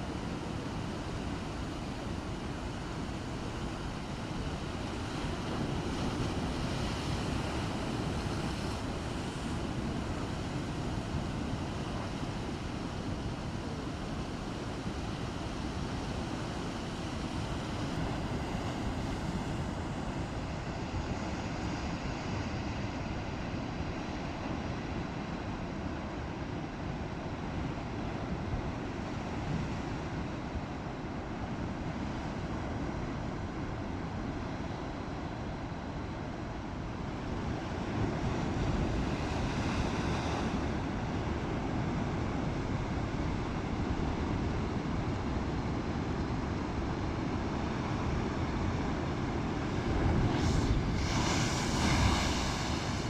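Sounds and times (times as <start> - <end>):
waves surging: 0.0 - 24.4, 26.3 - 53.0
wind blowing on microphone: 37.3 - 53.0.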